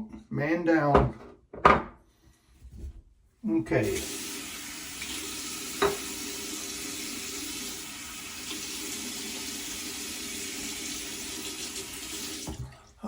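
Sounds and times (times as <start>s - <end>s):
tap running into sink: 5.0s - 6.4s, 12.0s - 12.7s
knock against sink: 5.8s - 6.1s.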